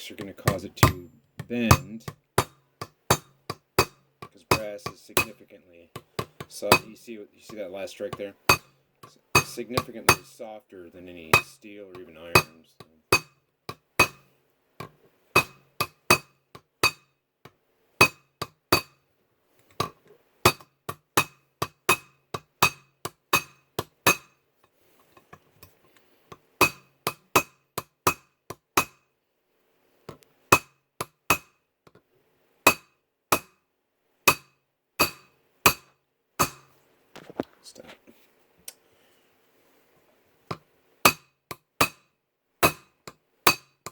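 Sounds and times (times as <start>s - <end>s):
hammer striking brass rivet: 0.2s - 5.4s, 6.0s - 7.6s, 8.4s - 10.3s, 11.3s - 17.1s, 18.0s - 19.0s, 19.7s - 24.4s, 26.3s - 29.0s, 30.5s - 31.5s, 32.7s - 33.6s, 34.3s - 36.8s, 40.5s - 42.0s, 42.6s - 43.9s.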